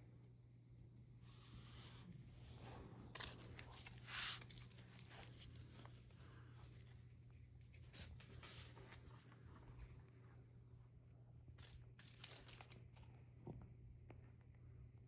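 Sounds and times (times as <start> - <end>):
faint crinkling and rustling: 1.7 - 10.3.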